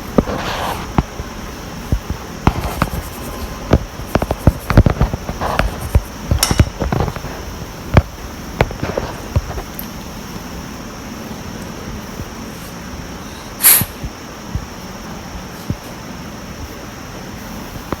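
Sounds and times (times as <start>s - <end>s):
short scraping: 0.0s - 8.0s
hand tools clicking on metal: 2.4s - 7.4s.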